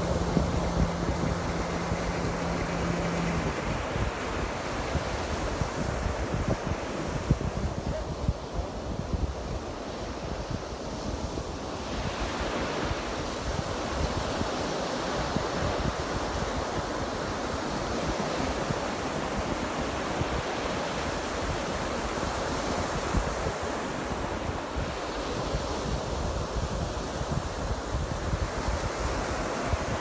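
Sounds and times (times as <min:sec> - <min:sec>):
waves breaking: 0:00.0 - 0:30.0
wind buffeting microphone: 0:00.0 - 0:30.0.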